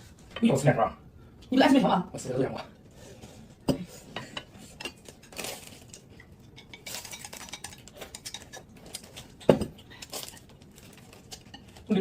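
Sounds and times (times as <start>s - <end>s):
dishes and cutlery clinking: 3.6s - 11.8s
cutlery scraping: 3.7s - 10.4s.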